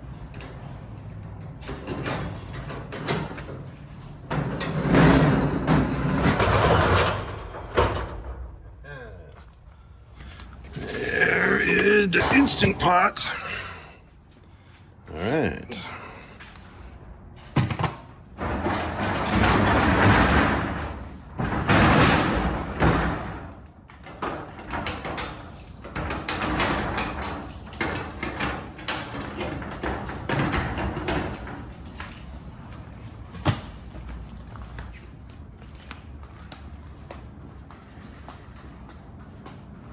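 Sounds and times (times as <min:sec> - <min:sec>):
sliding door rumbling: 0:01.5 - 0:08.4, 0:18.3 - 0:23.5.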